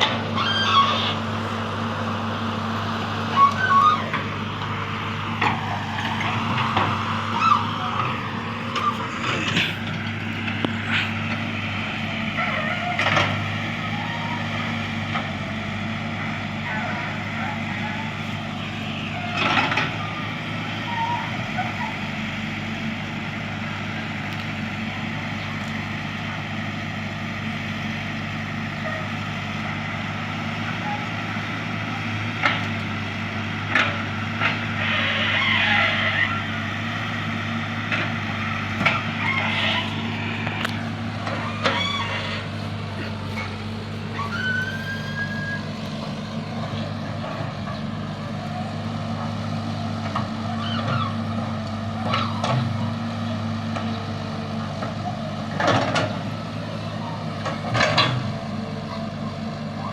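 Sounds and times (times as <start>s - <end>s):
excavator diesel engine running: 0.0s - 59.9s
brief squeal: 0.4s - 1.2s, 3.3s - 4.1s, 44.1s - 45.8s.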